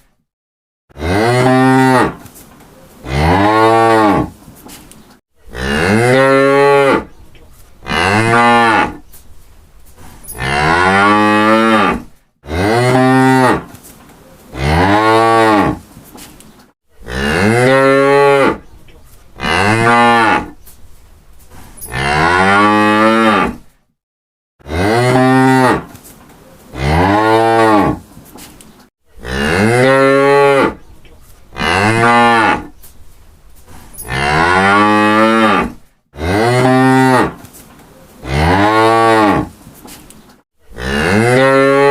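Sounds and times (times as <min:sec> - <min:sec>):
cows mooing: 0:05.4 - 0:07.1, 0:07.8 - 0:09.0, 0:10.3 - 0:13.7, 0:17.0 - 0:18.7, 0:19.4 - 0:20.6, 0:29.2 - 0:30.8, 0:31.5 - 0:32.8, 0:34.0 - 0:37.4, 0:40.7 - 0:41.9.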